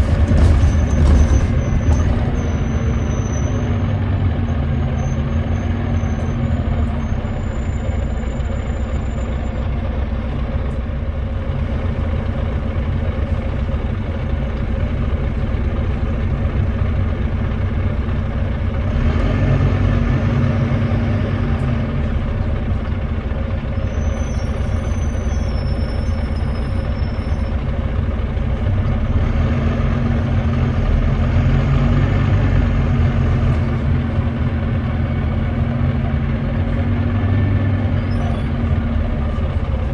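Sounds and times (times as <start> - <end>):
bus diesel engine droning: 0.0 - 39.9.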